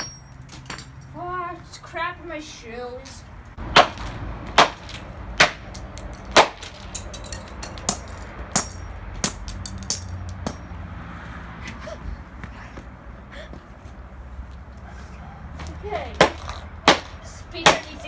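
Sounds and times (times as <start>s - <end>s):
hammer striking plastic pieces: 3.7s - 10.6s, 16.2s - 17.9s.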